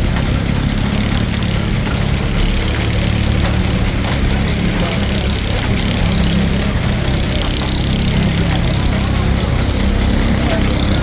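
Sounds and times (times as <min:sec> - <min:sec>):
sawmill mechanical drone: 0:00.0 - 0:11.0.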